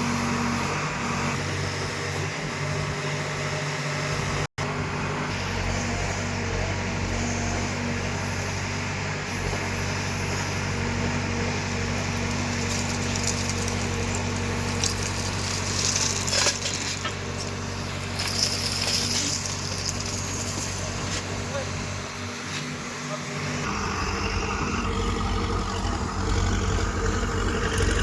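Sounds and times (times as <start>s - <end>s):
heavy machine engine running: 0.0s - 28.0s
sharp metal clanks and scrapes: 12.7s - 21.2s.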